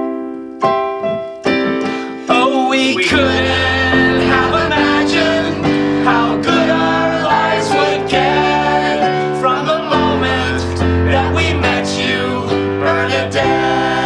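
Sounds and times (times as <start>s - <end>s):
acoustic guitar strumming: 1.8s - 9.6s.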